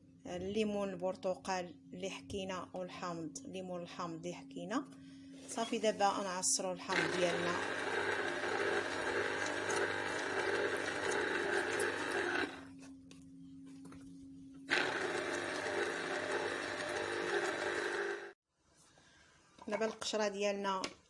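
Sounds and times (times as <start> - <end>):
citrus juicer motor whirring: 6.9 - 12.7, 14.7 - 18.4.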